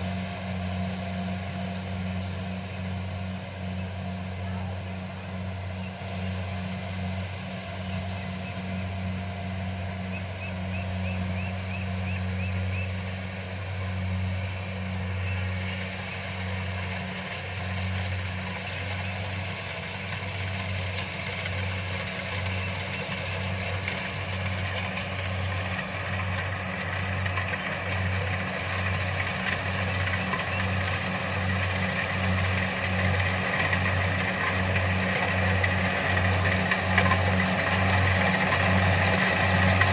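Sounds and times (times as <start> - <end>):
combine harvester engine hum: 0.0 - 39.9
machinery rattle: 15.1 - 39.9.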